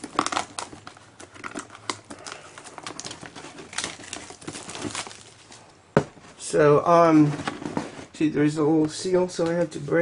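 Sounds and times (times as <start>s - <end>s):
plastic wrapping crinkling: 0.0s - 5.8s.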